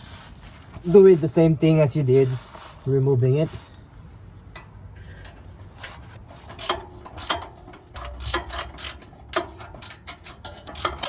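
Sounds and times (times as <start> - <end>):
ratchet wrench clicking: 6.4 - 11.0.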